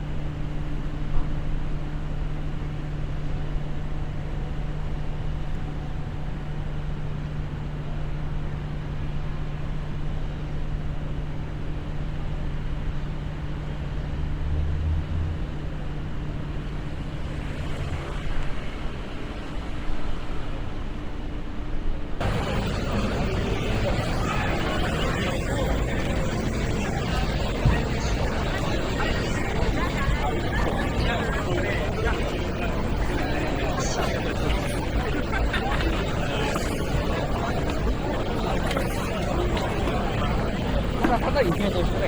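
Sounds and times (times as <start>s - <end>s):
busy street noise: 0.0s - 42.0s
low mechanical hum: 0.0s - 42.0s
distant traffic: 22.2s - 42.0s.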